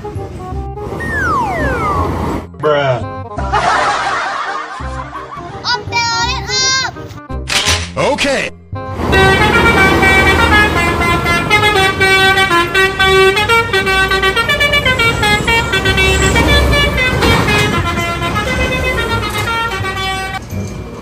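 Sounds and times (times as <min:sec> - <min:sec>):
multi-tone bus horn tune: 0:08.8 - 0:20.5.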